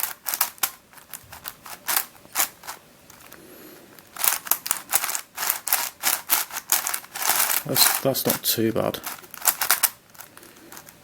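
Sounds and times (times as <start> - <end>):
puzzle cube clacking: 0.0 - 11.0.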